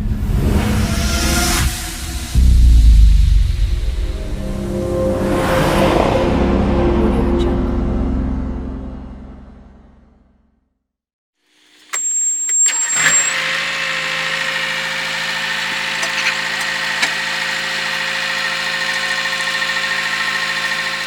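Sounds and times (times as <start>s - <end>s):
diesel engine starting and idling: 12.0s - 21.0s.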